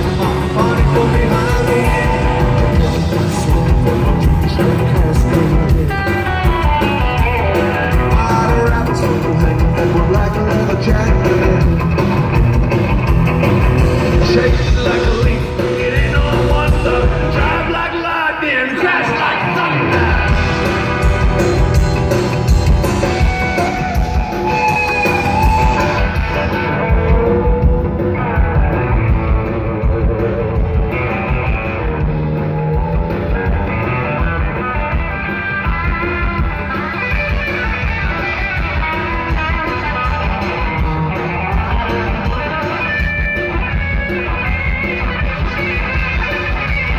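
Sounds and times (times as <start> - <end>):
person singing: 0.0 - 12.4, 14.0 - 21.8
rockabilly band playing live: 0.0 - 46.9
sliding guitar line: 0.0 - 46.9.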